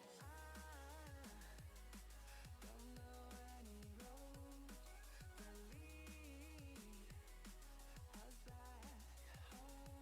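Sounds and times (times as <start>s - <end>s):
electronic background music: 0.0s - 10.0s.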